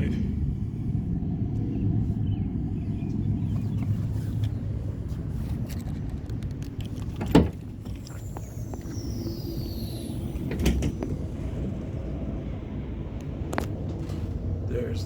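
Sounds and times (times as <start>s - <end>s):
low vehicle rumble: 0.0s - 15.0s
faint high falling whistle: 8.1s - 11.1s.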